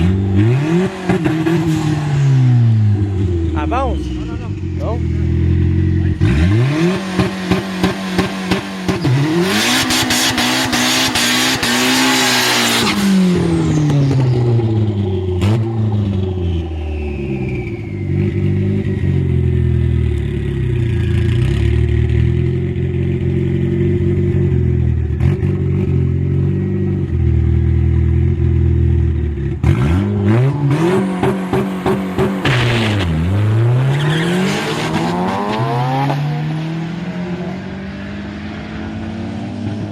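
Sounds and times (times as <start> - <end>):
car engine revving with pops: 0.0 - 3.5, 4.7 - 24.0, 29.4 - 36.8.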